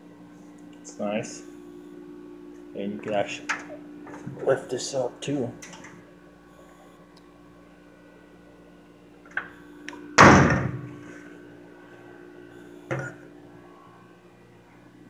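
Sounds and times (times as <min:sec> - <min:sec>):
metal tool chest slamming: 0:10.2 - 0:10.9.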